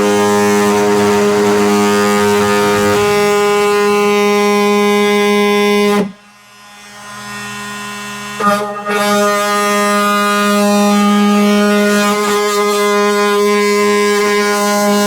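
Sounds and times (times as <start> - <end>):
power tool cutting plastic: 0.0 - 3.9.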